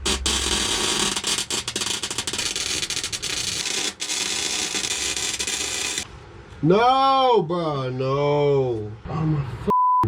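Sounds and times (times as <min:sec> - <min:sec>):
welding arc crackling: 0:00.0 - 0:06.1.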